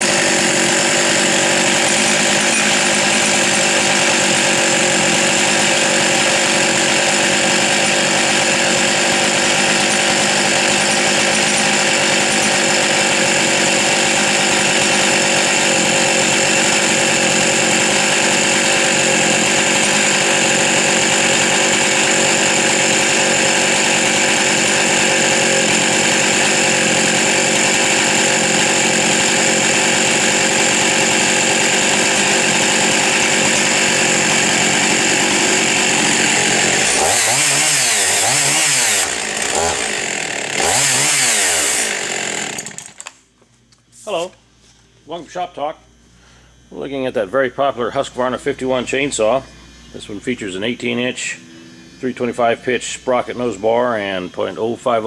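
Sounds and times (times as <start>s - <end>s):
chainsaw engine running: 0.0s - 43.4s, 44.0s - 55.0s.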